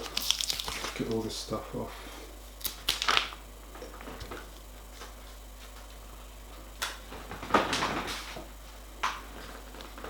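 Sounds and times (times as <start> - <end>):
protective film crackling: 0.0 - 1.2, 2.6 - 3.4.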